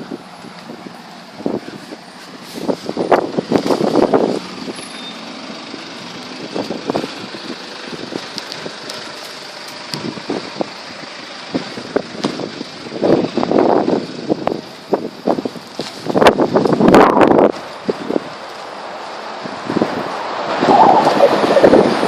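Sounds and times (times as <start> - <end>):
wind buffeting the microphone: 0.0 - 4.7, 11.6 - 18.5, 19.4 - 22.0.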